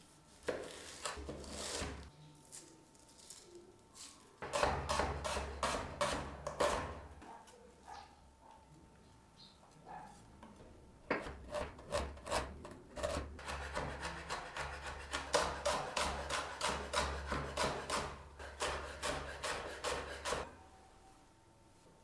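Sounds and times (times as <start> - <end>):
rasping food preparation strokes: 0.2 - 2.1, 4.1 - 7.2, 11.1 - 20.6.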